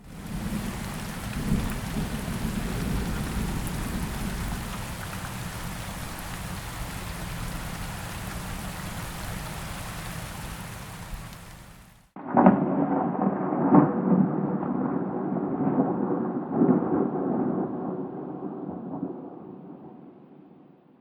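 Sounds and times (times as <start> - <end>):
rolling thunder: 0.0 - 7.4, 12.2 - 20.4
steady rain: 0.0 - 12.2
heavy rain: 0.0 - 14.2
thunder claps: 0.0 - 20.1.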